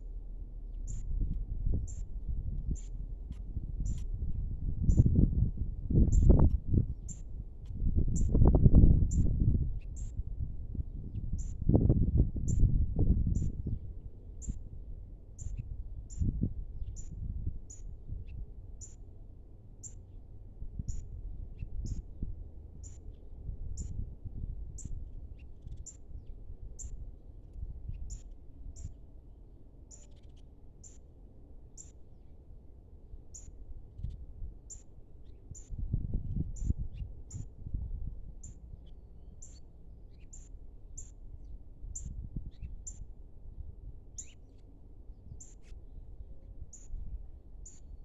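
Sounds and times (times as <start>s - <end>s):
steady low rumble: 0.0s - 48.0s
small bird chirping: 0.7s - 8.5s, 9.1s - 10.2s, 11.1s - 11.7s, 14.4s - 14.6s, 15.4s - 19.0s, 19.8s - 20.2s, 20.8s - 22.1s, 22.8s - 24.0s, 24.7s - 29.0s, 29.9s - 31.0s, 31.8s - 32.0s, 33.3s - 37.6s, 38.4s - 43.1s, 44.1s - 46.0s, 46.7s - 47.0s, 47.6s - 48.0s.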